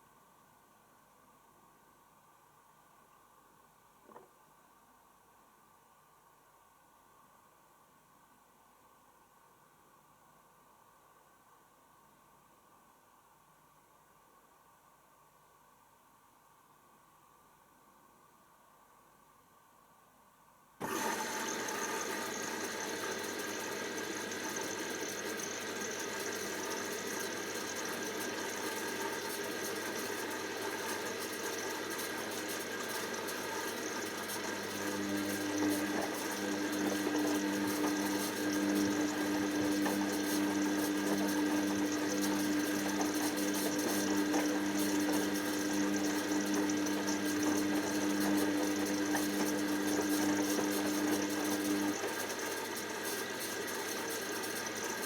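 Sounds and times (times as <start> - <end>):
washing machine whirring: 20.8 - 55.0.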